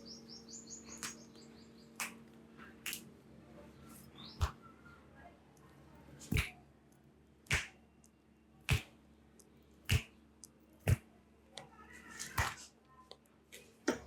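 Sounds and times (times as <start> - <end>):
hands striking in massage: 6.3 - 6.6, 7.5 - 7.8, 8.7 - 8.9, 9.9 - 10.1.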